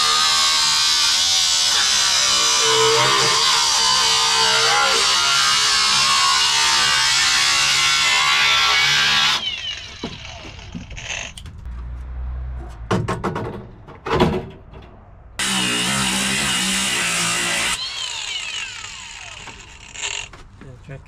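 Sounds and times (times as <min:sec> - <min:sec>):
power tool cutting sheet metal: 0:00.0 - 0:11.4, 0:15.4 - 0:20.3
metal clunks: 0:12.7 - 0:15.1.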